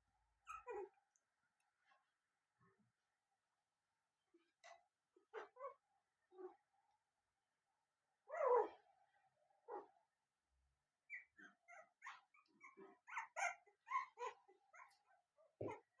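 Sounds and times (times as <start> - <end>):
puppy whining and yipping: 0.4 - 1.0, 11.1 - 16.0.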